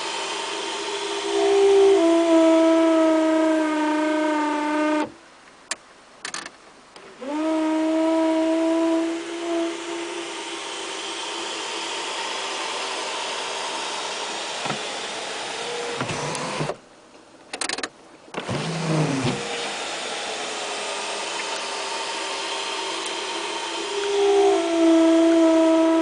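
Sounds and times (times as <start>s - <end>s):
sunroof motor whirring: 0.0s - 5.2s, 7.0s - 16.8s, 18.4s - 26.0s
sunroof squeaking: 1.2s - 5.2s, 7.2s - 10.5s, 12.7s - 16.8s, 17.6s - 20.0s, 21.0s - 26.0s.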